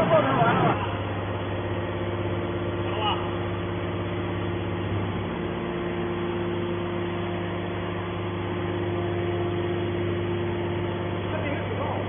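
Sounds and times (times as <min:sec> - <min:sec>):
machine power unit humming: 0:00.0 - 0:12.0.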